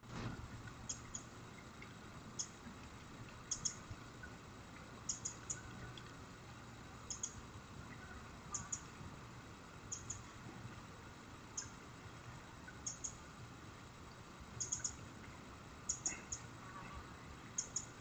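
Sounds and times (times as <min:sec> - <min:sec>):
steady hiss: 0:00.0 - 0:18.0
sharp high clicks: 0:03.5 - 0:03.8, 0:05.0 - 0:06.0, 0:14.6 - 0:15.0, 0:15.8 - 0:16.5, 0:17.6 - 0:18.0.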